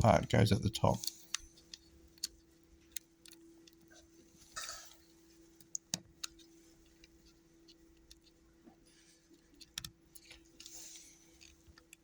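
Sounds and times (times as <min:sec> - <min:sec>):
plastic parts clicking: 0:00.9 - 0:03.9, 0:09.6 - 0:10.8.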